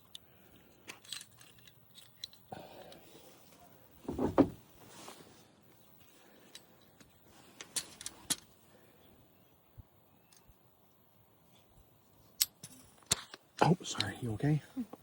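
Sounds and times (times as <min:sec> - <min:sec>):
dull bump: 0:04.0 - 0:04.6
sharp clicks of wire fittings: 0:06.5 - 0:08.5.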